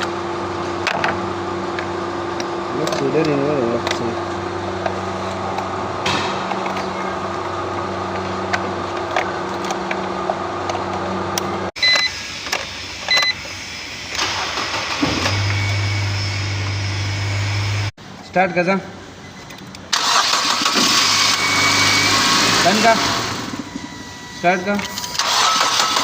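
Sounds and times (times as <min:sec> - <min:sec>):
mechanical hum: 0:00.0 - 0:20.0, 0:20.8 - 0:26.0
short electronic beeps: 0:11.8 - 0:12.2.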